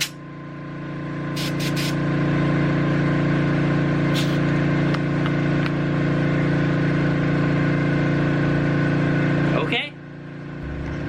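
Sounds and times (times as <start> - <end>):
air compressor running: 0.0 - 11.0
short air hisses: 1.4 - 2.0, 4.1 - 4.5.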